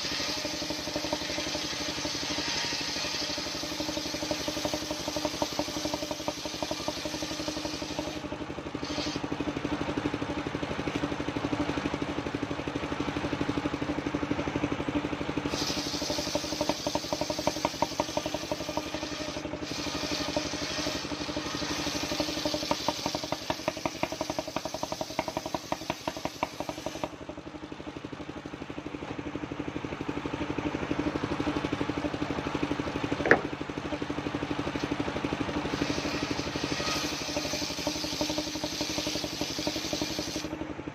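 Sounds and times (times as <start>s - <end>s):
saw blade cutting wood: 0.0s - 9.3s, 15.5s - 27.2s, 33.2s - 33.5s, 34.7s - 40.6s
sawmill engine running: 0.0s - 40.9s.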